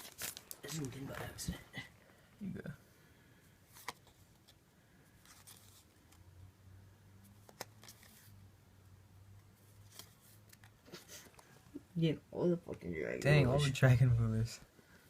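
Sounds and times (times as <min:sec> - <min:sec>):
cards and wrappers rustling: 0:00.0 - 0:01.6, 0:03.6 - 0:06.3, 0:07.2 - 0:08.4, 0:09.6 - 0:11.7.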